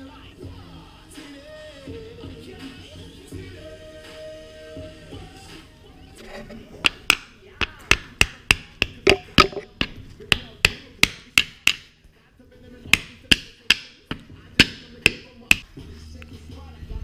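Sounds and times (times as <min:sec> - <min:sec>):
hammer tapping: 0:06.8 - 0:11.9, 0:12.9 - 0:15.6.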